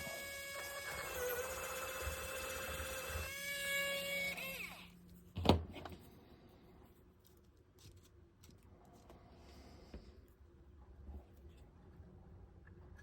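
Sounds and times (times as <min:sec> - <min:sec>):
electric drill whining: 0:00.0 - 0:04.9.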